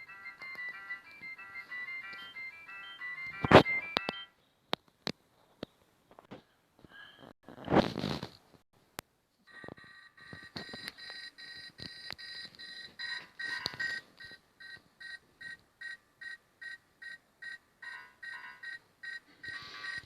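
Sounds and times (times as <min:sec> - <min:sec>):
electronic phone ringtone: 0:00.0 - 0:04.4, 0:09.5 - 0:20.0
short evenly spaced beeps: 0:10.2 - 0:20.0.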